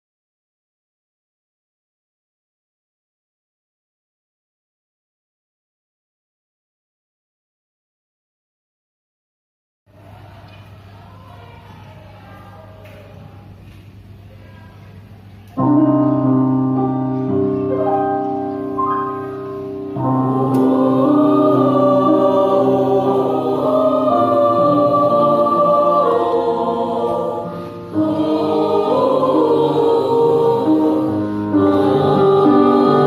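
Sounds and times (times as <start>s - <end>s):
choir singing in harmony: 18.2s - 33.0s.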